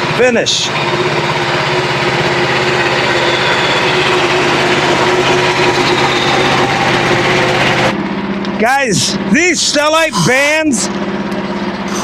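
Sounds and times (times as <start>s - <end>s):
band sawmill cutting log: 0.0s - 8.0s.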